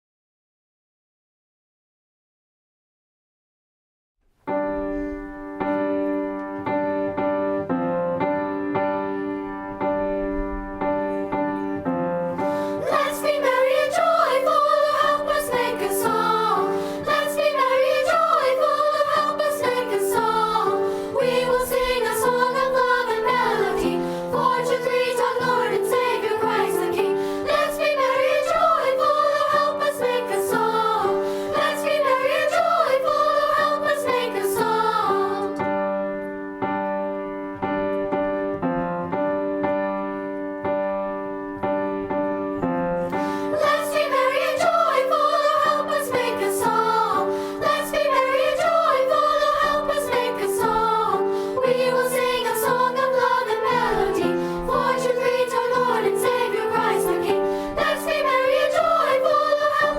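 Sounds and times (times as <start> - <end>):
piano accompaniment: 4.4 - 59.9
voices singing: 12.4 - 35.6, 43.2 - 59.9.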